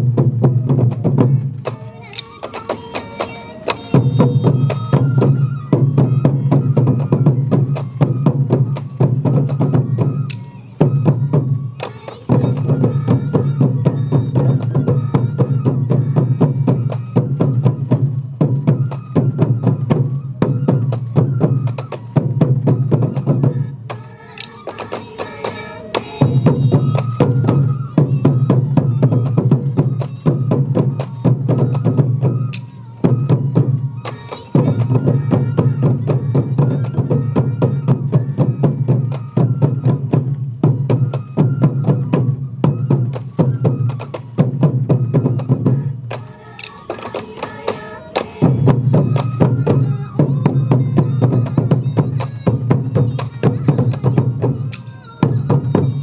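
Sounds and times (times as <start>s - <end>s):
taiko drums beating fast rhythm: 0.0s - 56.0s.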